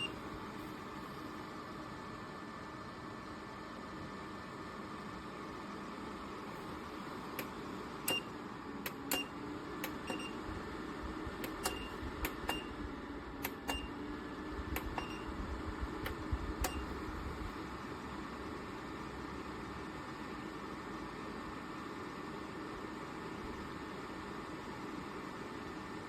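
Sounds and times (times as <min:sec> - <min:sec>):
fan heater running: 0:00.0 - 0:26.0
sharp clicks: 0:07.4 - 0:10.3, 0:11.4 - 0:12.7, 0:13.4 - 0:13.9, 0:14.7 - 0:15.1.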